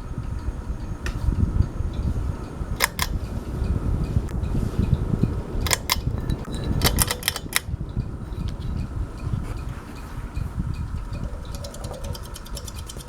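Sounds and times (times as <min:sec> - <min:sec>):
ceiling fan low rumble: 0:00.0 - 0:13.0
sharp clicks: 0:02.8 - 0:03.4, 0:05.6 - 0:08.0, 0:11.0 - 0:13.0.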